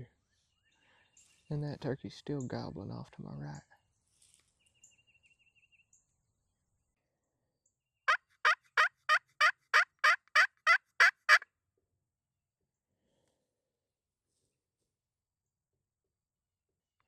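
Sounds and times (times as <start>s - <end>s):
turkey yelps: 8.1s - 11.4s.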